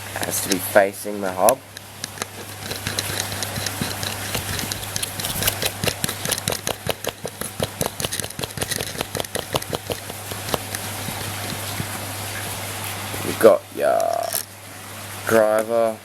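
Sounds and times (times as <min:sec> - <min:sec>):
bike hub ratchet clicking: 0:01.5 - 0:12.0.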